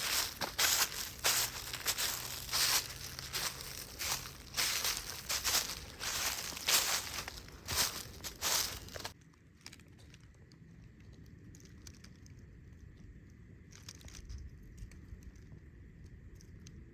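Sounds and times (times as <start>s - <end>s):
faint low wind rumble: 0.0s - 16.9s
small clicks and crackles: 0.0s - 16.9s.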